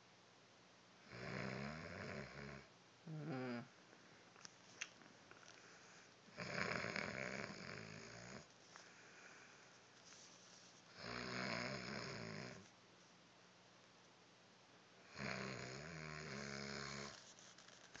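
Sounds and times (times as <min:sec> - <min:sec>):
person snoring: 0:01.1 - 0:03.7, 0:06.3 - 0:08.5, 0:10.9 - 0:12.7, 0:15.0 - 0:17.2
quiet breathing: 0:05.4 - 0:13.2, 0:15.0 - 0:18.0.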